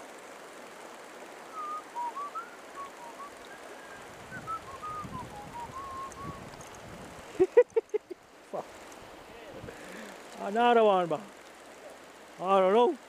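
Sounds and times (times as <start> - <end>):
river water rushing: 0.0 - 13.0
person whistling a tune: 1.6 - 3.3, 4.3 - 6.4.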